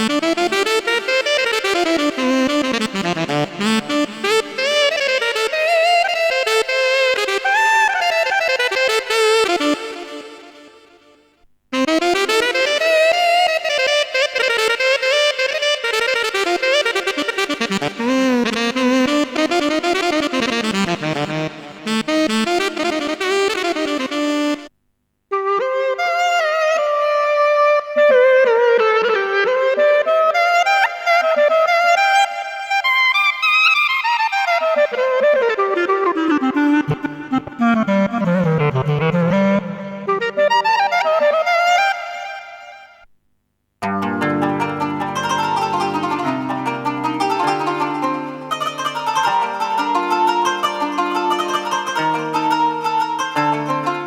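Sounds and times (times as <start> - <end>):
keyboard woodwind solo: 0.0 - 11.1, 11.8 - 24.7, 25.3 - 43.1, 44.2 - 54.0
keyboard reed instrument melody: 43.8 - 54.0.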